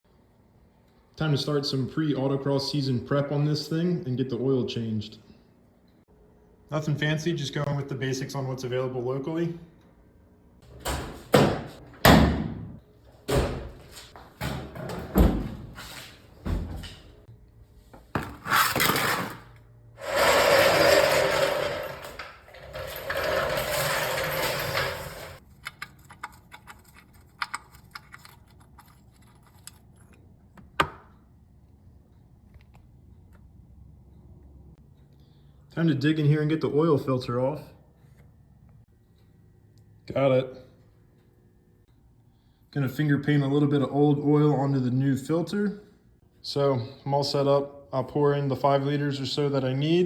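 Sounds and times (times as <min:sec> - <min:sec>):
tools and parts clattering: 0:20.0 - 0:25.4.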